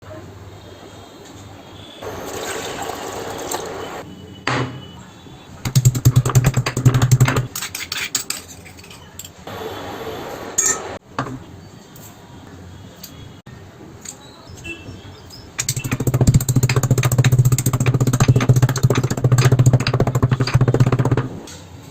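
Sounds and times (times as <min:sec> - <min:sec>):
kitchen utensils clinking: 0:07.4 - 0:09.4.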